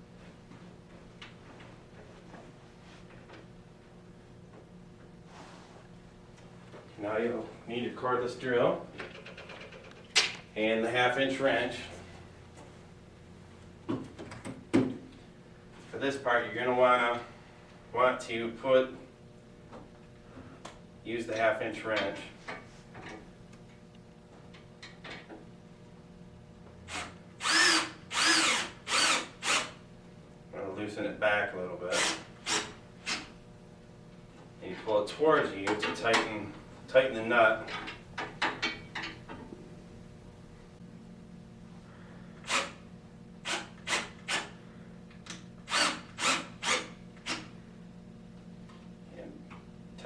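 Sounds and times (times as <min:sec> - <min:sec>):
cordless drill driving bolt: 0:26.9 - 0:29.7, 0:45.7 - 0:47.5.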